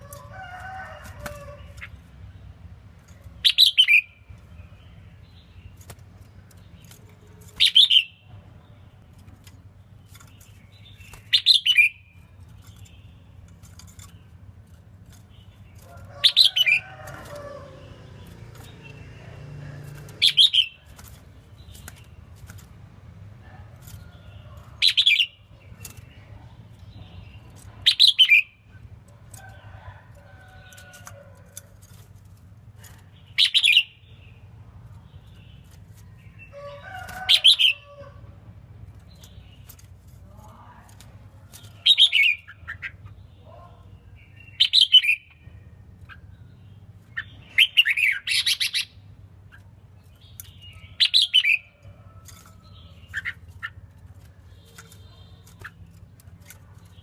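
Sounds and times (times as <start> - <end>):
bird singing bright phrases: 3.1 - 14.4, 19.8 - 22.6, 24.0 - 28.8, 32.8 - 38.0, 40.4 - 51.8, 52.5 - 57.0.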